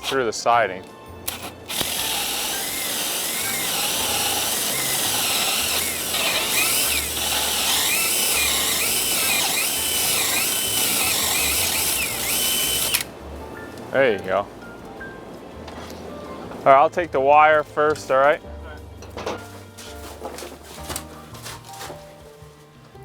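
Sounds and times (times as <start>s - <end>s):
power drill boring through wood: 0.0s - 0.2s, 1.3s - 13.1s.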